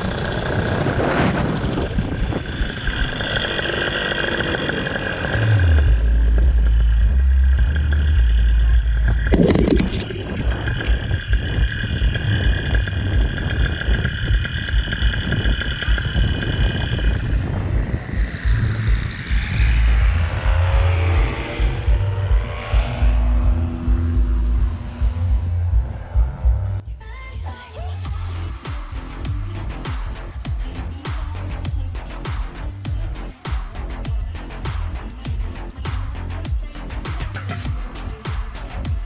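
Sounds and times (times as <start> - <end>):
paramotor engine and propeller: 0.0 - 26.8
wind rumble on microphone: 0.0 - 26.8.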